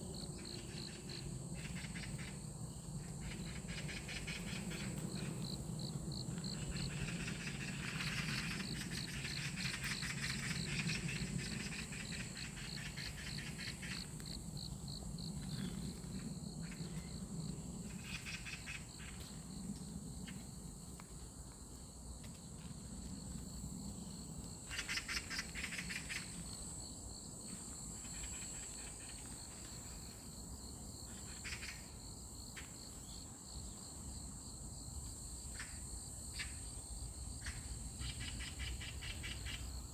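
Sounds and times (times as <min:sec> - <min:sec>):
insects trilling: 0:00.0 - 0:21.0, 0:23.1 - 0:39.9.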